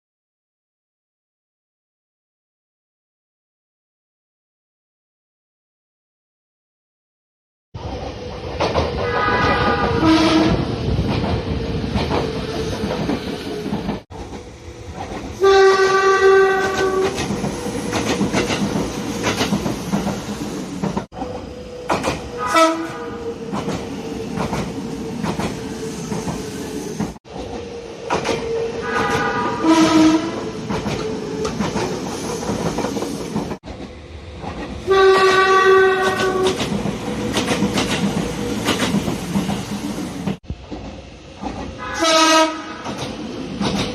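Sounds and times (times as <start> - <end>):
train on rails: 7.8 - 43.9
train horn: 9.0 - 10.7, 15.4 - 17.2, 22.4 - 23.2, 28.7 - 30.6, 34.9 - 36.6, 41.8 - 43.0.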